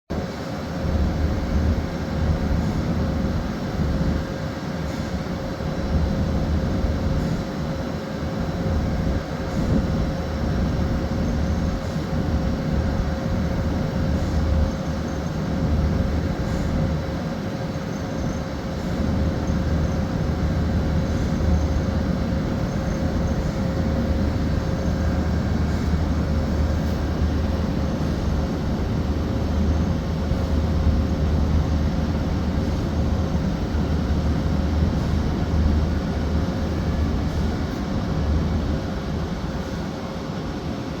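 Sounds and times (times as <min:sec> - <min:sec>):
diesel engine rumbling: 0:08.4 - 0:39.4.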